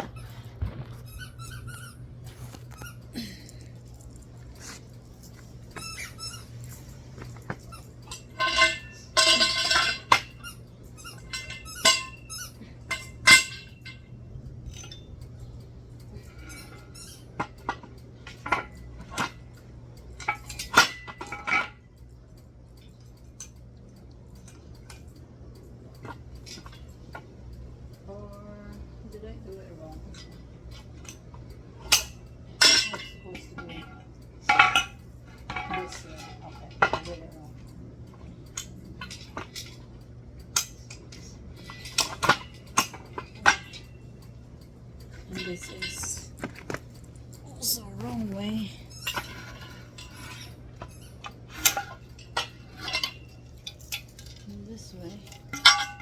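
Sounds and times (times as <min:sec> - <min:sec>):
metal parts squeaking: 0:00.0 - 0:14.0, 0:14.7 - 0:18.9, 0:40.6 - 0:56.0
metal parts clinking and knocking: 0:31.8 - 0:56.0.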